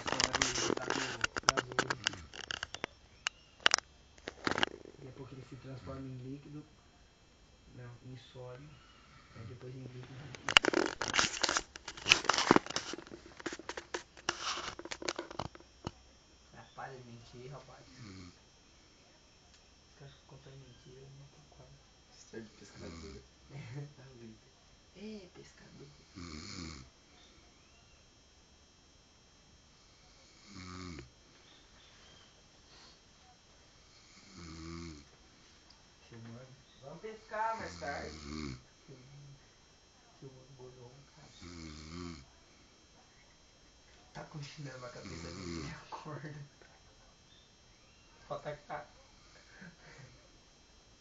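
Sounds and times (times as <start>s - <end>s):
clicks in snoring: 0.0s - 5.0s, 30.4s - 31.1s
faint breath: 8.6s - 9.6s, 31.4s - 33.1s
man snoring: 17.8s - 18.4s, 22.4s - 23.3s, 25.9s - 26.9s, 29.8s - 31.1s, 33.8s - 35.1s, 37.4s - 38.7s, 41.2s - 42.3s, 45.0s - 46.0s.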